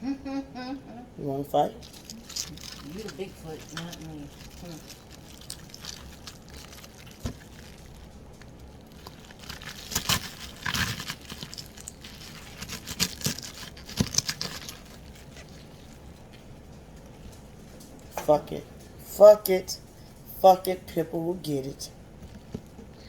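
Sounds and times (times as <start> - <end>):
crinkling and tearing: 1.7 - 18.1.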